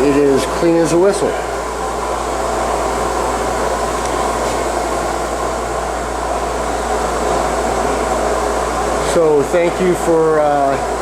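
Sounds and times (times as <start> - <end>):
lathe fan-like hum: 0.0 - 11.0.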